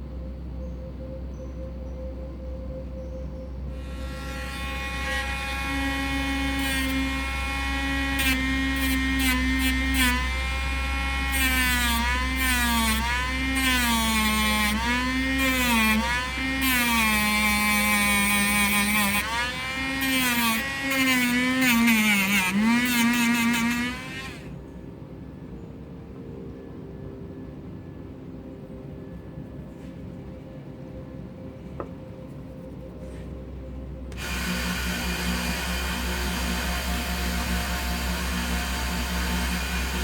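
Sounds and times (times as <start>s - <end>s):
rotary tool grinding steel: 3.8s - 24.5s, 34.1s - 40.0s.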